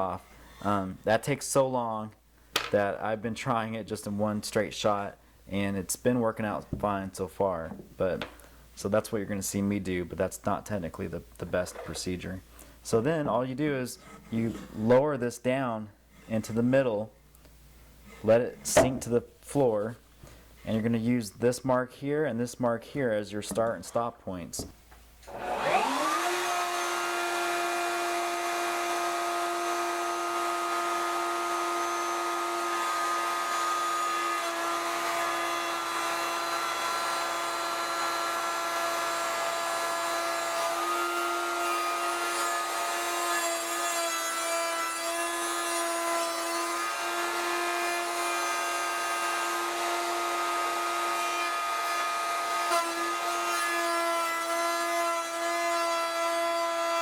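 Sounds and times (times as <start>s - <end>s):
router whining: 25.3s - 43.3s.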